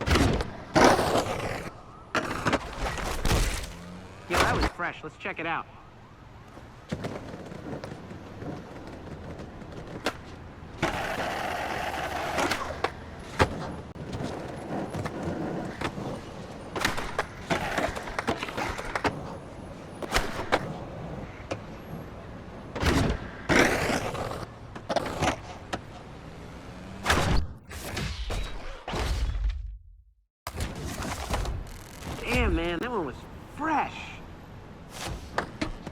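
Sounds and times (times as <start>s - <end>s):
skateboard wheels rolling: 0.0s - 4.7s, 5.9s - 27.0s, 30.5s - 35.9s
skateboard grinding scrape: 0.3s - 3.9s, 6.9s - 25.7s
skateboard clacks and knocks: 6.6s - 25.9s.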